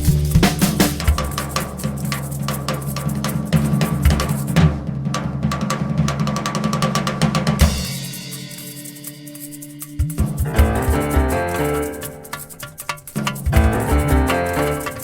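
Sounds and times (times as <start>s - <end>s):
drum kit fills: 0.0s - 15.0s
sustained keyboard notes: 8.3s - 15.0s.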